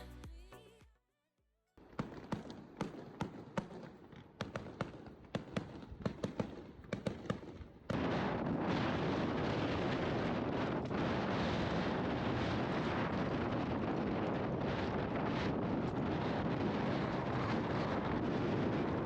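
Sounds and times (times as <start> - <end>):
background music: 0.0 - 1.0
wind buffeting microphone: 5.6 - 19.0.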